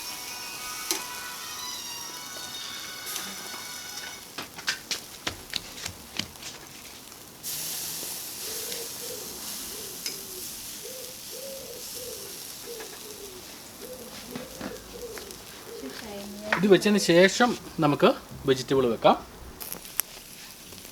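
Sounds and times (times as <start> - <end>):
meat sizzling on grill: 0.0 - 19.0, 19.6 - 20.9
pigeon cooing: 7.5 - 17.7
metal clicks on grill: 10.0 - 10.3.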